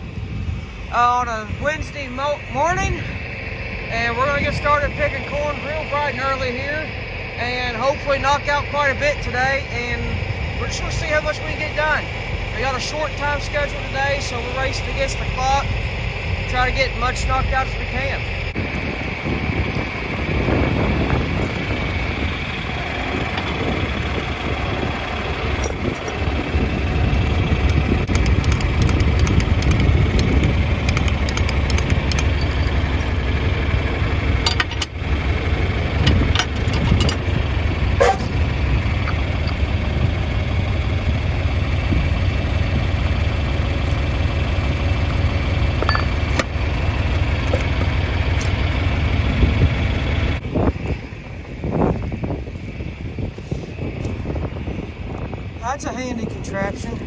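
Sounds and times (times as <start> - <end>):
tractor engine rumbling: 0.0 - 57.0
sharp clicks and knocks: 27.6 - 33.2, 34.4 - 35.0.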